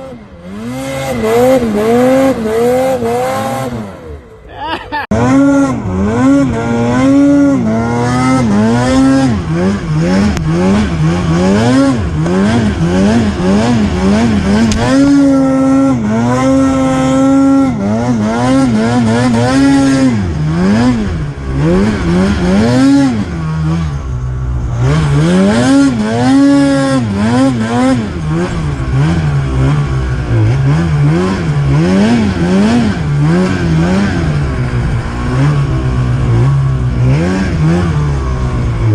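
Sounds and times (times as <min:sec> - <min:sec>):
snowmobile engine revving: 0:00.0 - 0:38.9.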